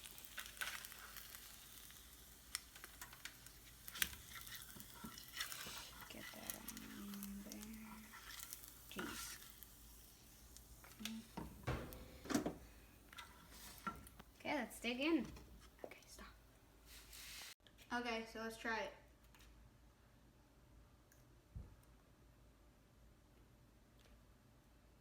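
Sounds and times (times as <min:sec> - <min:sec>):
fish sizzling in a pan: 0:00.0 - 0:11.9
spatula and dishes clinking: 0:03.9 - 0:09.6.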